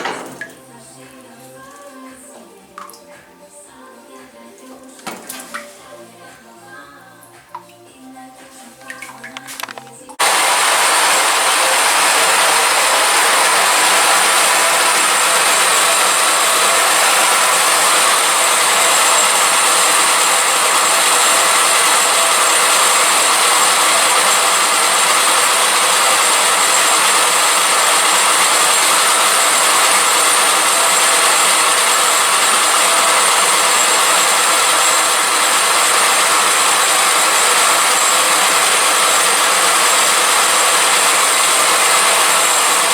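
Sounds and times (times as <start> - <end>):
resurfacing machine grinding hiss: 0.0 - 0.6, 9.4 - 42.9.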